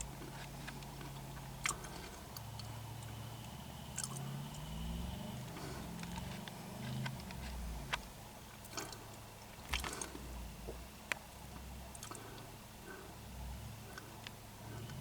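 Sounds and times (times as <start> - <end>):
truck engine idling: 0.0 - 15.0
sharp clicks and creaks: 5.4 - 8.1.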